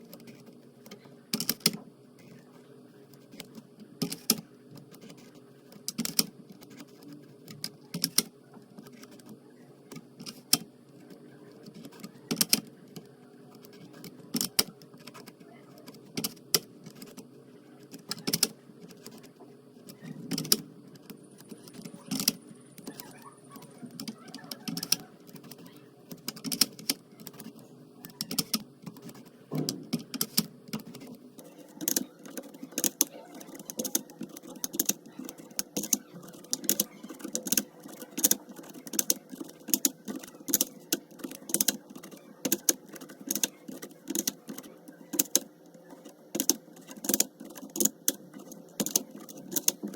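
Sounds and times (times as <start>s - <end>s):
plastic gear clicking: 0.1s - 2.4s, 3.2s - 49.9s.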